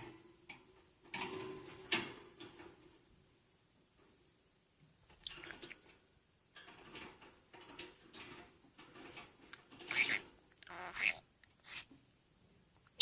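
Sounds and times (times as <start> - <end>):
budgerigar mimicking a sneeze: 10.7 - 11.9.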